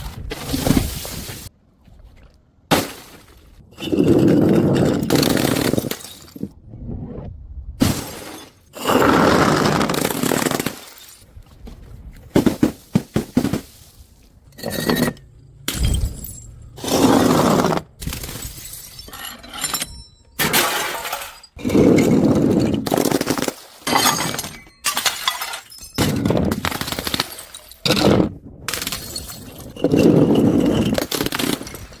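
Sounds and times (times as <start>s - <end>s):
glass bottles smashing: 3.8s - 6.5s, 7.8s - 11.3s, 12.4s - 17.2s, 18.0s - 28.1s, 28.7s - 32.0s
glass shards tinkling: 14.5s - 16.8s, 18.1s - 22.8s, 23.9s - 26.3s, 28.8s - 32.0s.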